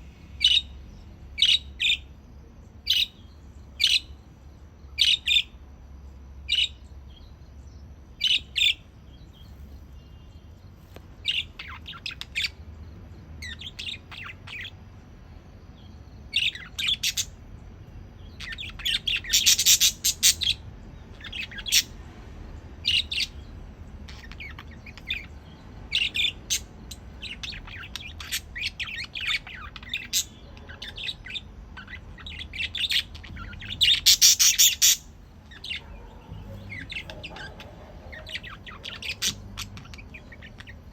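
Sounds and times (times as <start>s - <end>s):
budgerigars chirping: 0.4s - 2.2s, 2.8s - 4.2s, 4.9s - 5.6s, 6.4s - 6.8s, 8.2s - 10.2s, 11.2s - 14.9s, 15.8s - 17.4s, 18.2s - 22.0s, 22.8s - 40.9s.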